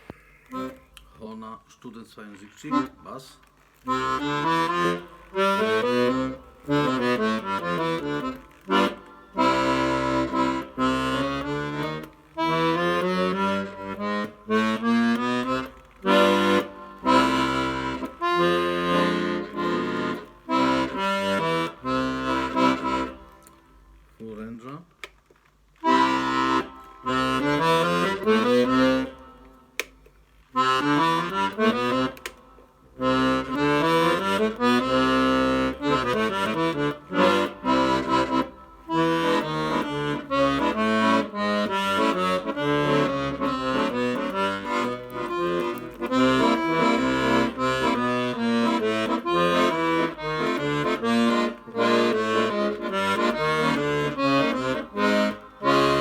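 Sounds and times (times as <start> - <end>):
accordion playing: 0.0 - 1.4, 2.2 - 56.0.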